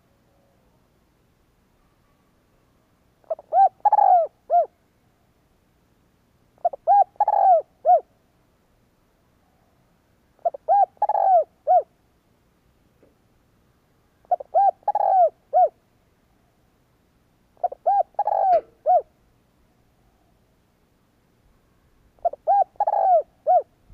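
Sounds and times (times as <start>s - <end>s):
dove cooing: 3.2s - 4.8s, 6.6s - 8.1s, 10.4s - 11.9s, 14.2s - 15.8s, 17.6s - 19.1s, 22.2s - 23.8s.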